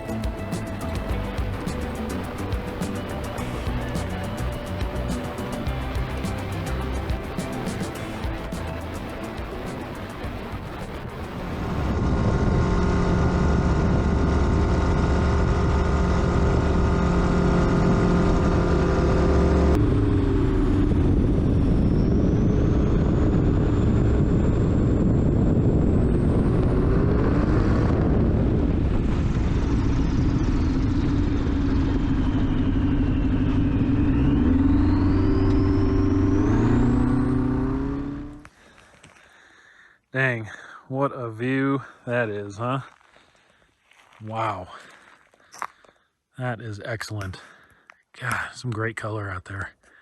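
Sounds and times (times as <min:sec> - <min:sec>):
light airplane engine droning: 0:00.0 - 0:39.2.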